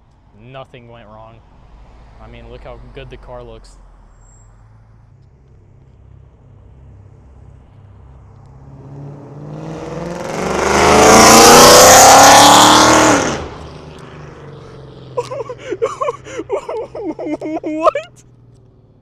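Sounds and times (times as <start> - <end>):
car engine accelerating hard: 8.5 - 19.0
loud raspy exhaust: 9.3 - 17.1.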